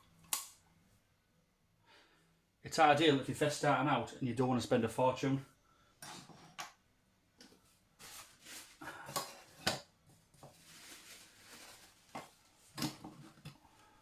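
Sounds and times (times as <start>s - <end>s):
rustling: 7.6s - 13.5s.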